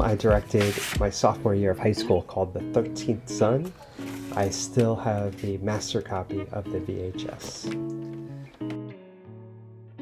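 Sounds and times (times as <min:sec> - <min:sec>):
plucked guitar notes: 0:01.1 - 0:03.8, 0:04.5 - 0:10.0.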